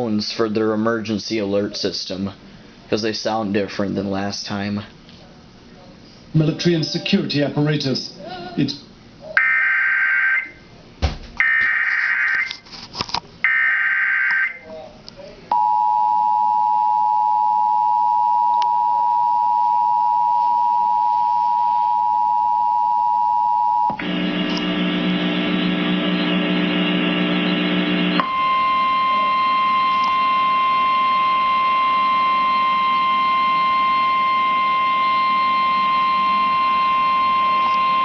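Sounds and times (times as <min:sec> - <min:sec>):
steady high tone: 0:24.9 - 0:38.0
two-tone attention signal: 0:27.4 - 0:38.0.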